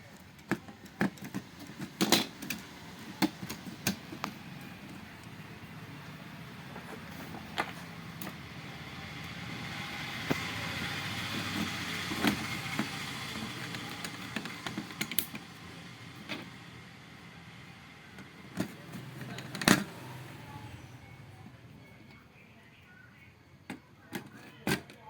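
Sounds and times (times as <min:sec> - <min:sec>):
background traffic noise: 0:00.0 - 0:25.0.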